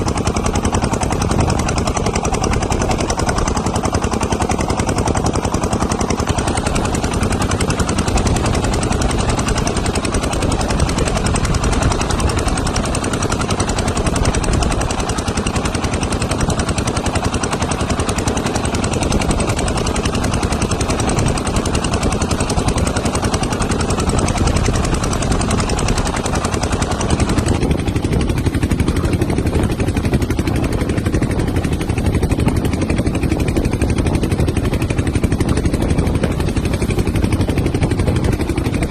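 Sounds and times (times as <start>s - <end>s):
boat engine chugging: 0.0s - 38.9s
wind noise: 0.0s - 38.9s.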